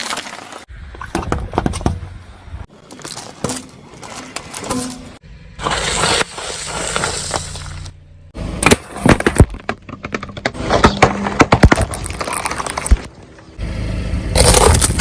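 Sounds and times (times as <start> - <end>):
tyre crunching brittle objects: 0.0 - 0.7, 2.7 - 8.0, 8.6 - 13.2, 14.3 - 15.0.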